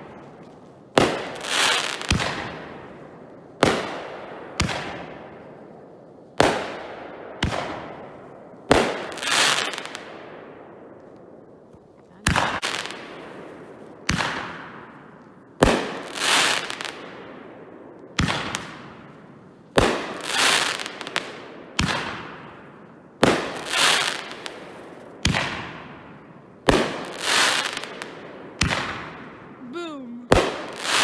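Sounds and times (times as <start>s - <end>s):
fireworks crackling: 1.0s - 2.6s, 26.7s - 28.9s, 29.7s - 31.0s
fireworks bangs echoing: 1.0s - 3.0s, 8.7s - 10.4s, 23.2s - 31.0s.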